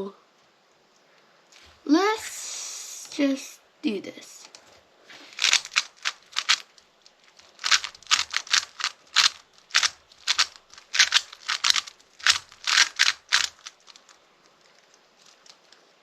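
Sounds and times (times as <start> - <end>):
plastic puzzle cube clacking: 5.3 - 16.0.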